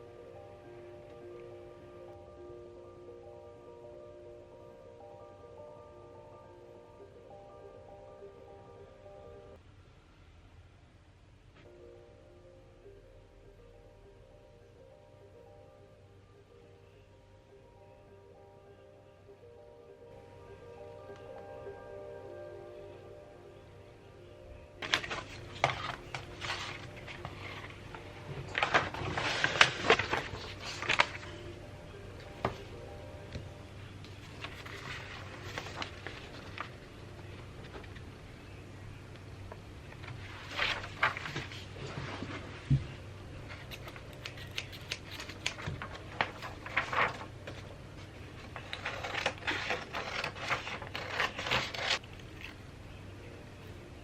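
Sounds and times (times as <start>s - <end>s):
packaging rustling and scraping: 24.8s - 31.4s, 48.4s - 52.5s
hands handling packaging: 24.8s - 31.5s, 34.2s - 38.0s, 40.0s - 42.4s, 43.5s - 52.6s.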